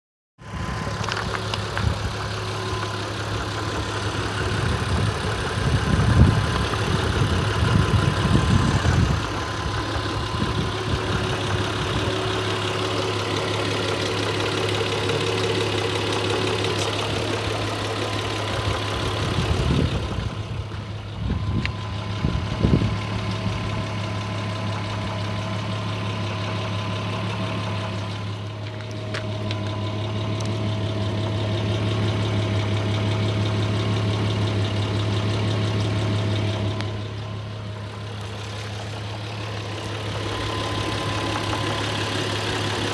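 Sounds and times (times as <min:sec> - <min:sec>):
car engine idling: 0:00.4 - 0:42.9
engine tapping knock: 0:01.3 - 0:42.9.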